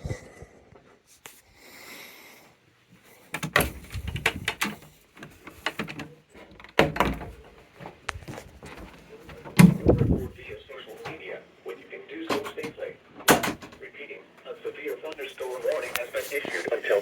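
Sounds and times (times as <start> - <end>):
knocks and clatters: 3.4 - 10.3.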